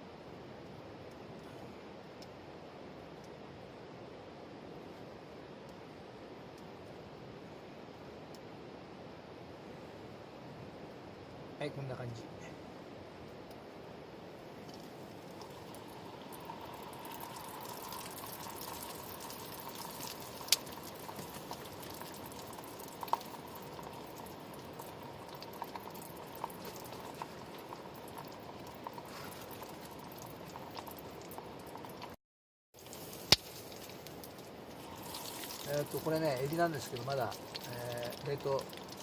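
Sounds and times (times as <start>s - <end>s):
oil sizzling with pops: 14.5s - 32.2s, 32.8s - 39.0s.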